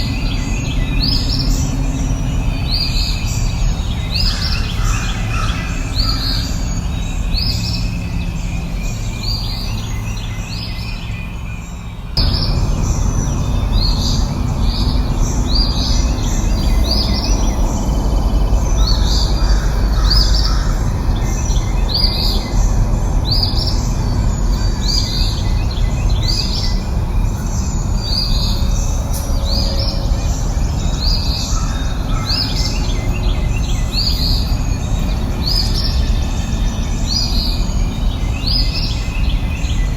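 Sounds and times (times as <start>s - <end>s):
low background rumble: 0.0s - 39.9s
small birds chirping: 0.0s - 39.9s.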